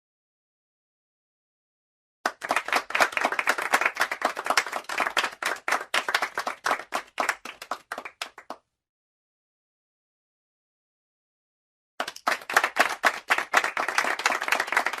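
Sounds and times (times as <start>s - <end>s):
hands clapping: 2.2s - 8.7s, 12.0s - 15.0s.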